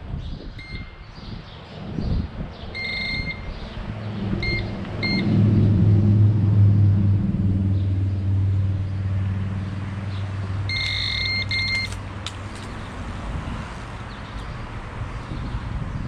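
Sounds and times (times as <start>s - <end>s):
bite alarm electronic beeps: 0.6s - 1.0s, 2.8s - 3.5s, 4.4s - 5.4s, 10.7s - 12.0s
vehicle engine hum: 1.4s - 16.0s
sharp clicks: 10.7s - 12.8s.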